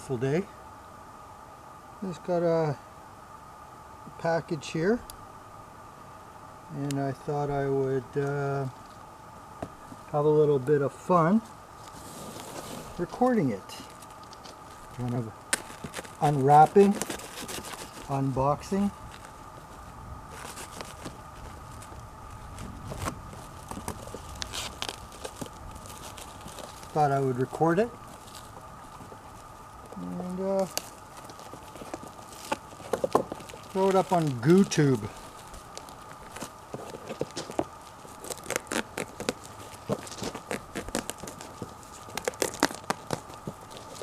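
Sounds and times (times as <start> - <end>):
package rustling and crackling: 11.8 - 44.0
wrapping torn and crumpled: 11.8 - 44.0.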